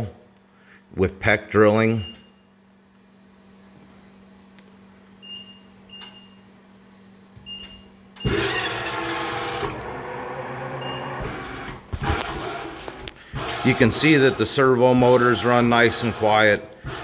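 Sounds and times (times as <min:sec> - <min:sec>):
low steady hum: 0:00.0 - 0:09.0
mill motors running: 0:08.2 - 0:17.0.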